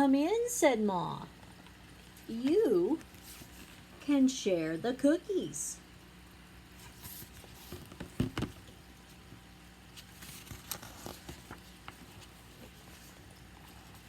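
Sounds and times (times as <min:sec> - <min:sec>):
book pages rustling: 0:01.6 - 0:03.9, 0:06.8 - 0:14.0.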